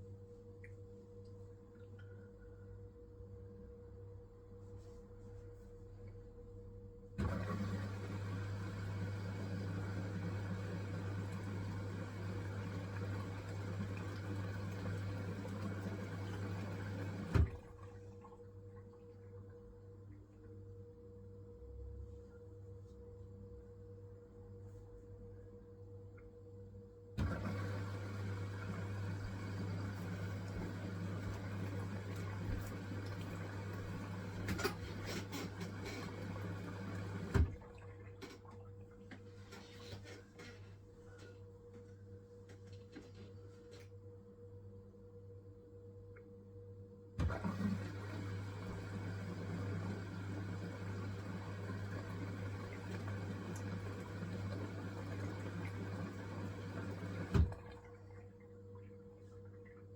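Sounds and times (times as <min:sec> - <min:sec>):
washing machine hum: 0:00.0 - 0:59.9
drum sloshing and rustling: 0:29.2 - 0:40.8.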